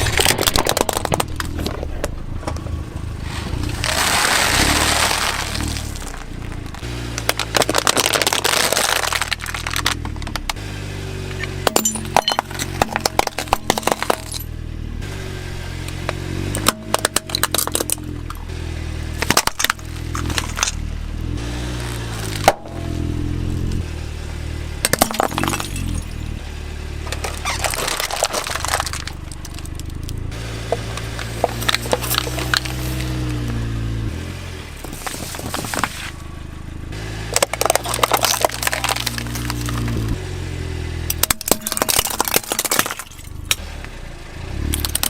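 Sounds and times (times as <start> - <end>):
plastic toys clattering together: 0.0 - 2.1, 6.0 - 10.5, 11.7 - 14.5, 16.6 - 18.4, 19.2 - 20.8, 24.9 - 26.2, 27.1 - 33.1, 37.4 - 40.1, 41.1 - 43.5
low droning hum: 11.3 - 34.2.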